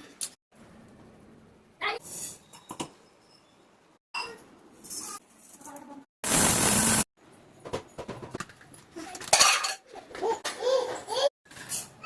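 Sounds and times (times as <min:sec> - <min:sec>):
utensils and cookware clinking: 0:07.7 - 0:10.1.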